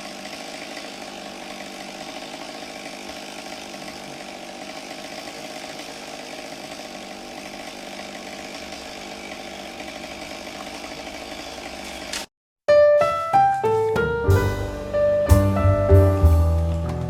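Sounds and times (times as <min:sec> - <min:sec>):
chainsaw engine running: 0:00.0 - 0:12.3
piano music: 0:12.7 - 0:17.0.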